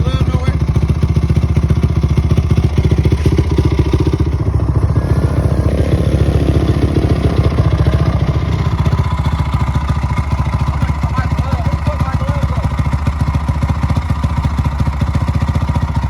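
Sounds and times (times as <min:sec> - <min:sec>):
dirt bike engine running: 0:00.0 - 0:16.0.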